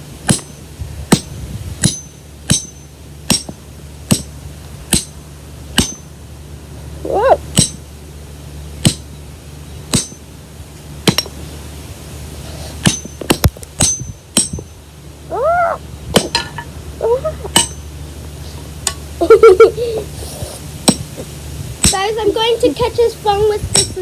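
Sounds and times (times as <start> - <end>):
hammer striking rock: 0.3 - 4.3, 4.9 - 5.2, 5.8 - 6.0, 7.6 - 7.8, 8.8 - 9.0, 9.9 - 10.2, 11.0 - 11.4, 12.8 - 14.6, 16.2 - 16.6.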